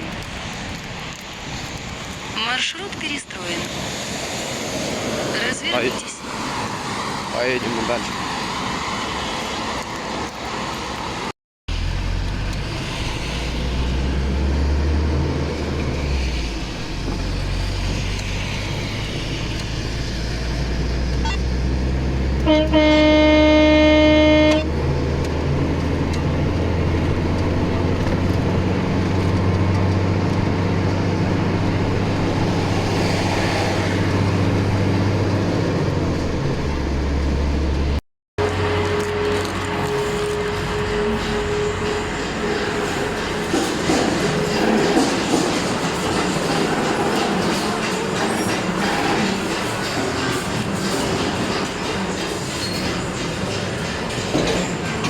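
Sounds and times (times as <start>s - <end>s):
vehicle horn blast: 22.4s - 24.7s, 38.4s - 43.2s.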